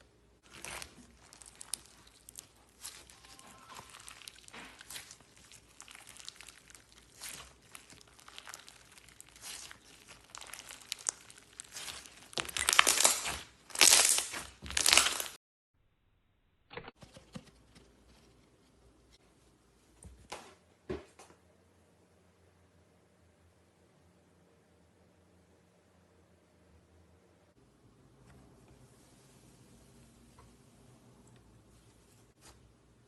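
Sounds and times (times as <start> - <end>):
slime squeezed and stretched by hand: 0.4 - 15.3.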